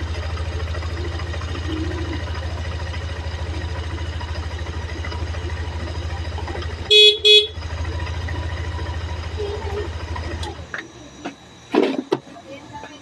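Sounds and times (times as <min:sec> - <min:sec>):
motorcycle engine idling: 0:00.0 - 0:11.6
motorcycle horn toots: 0:01.1 - 0:03.4, 0:06.0 - 0:10.7.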